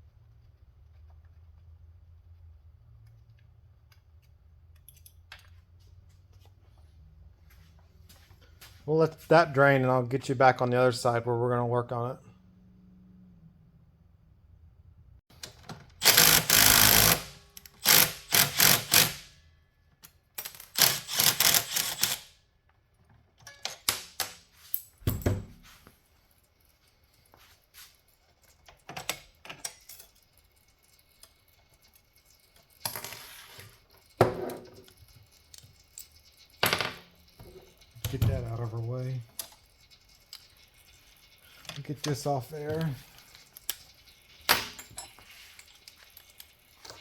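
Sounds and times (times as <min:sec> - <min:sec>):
hand tools and metal parts clattering: 0:03.9 - 0:09.5, 0:20.0 - 0:22.2, 0:23.0 - 0:47.0.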